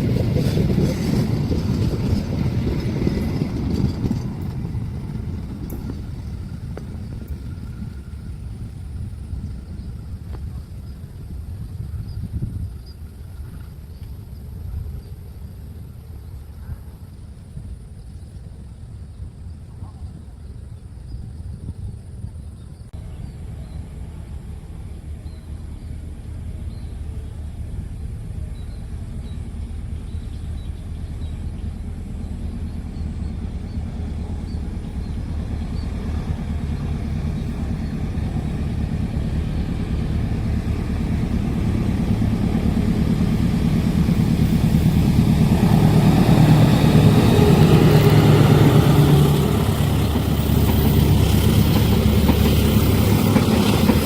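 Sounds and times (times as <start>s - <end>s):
diesel locomotive engine rumble: 0.0s - 54.0s.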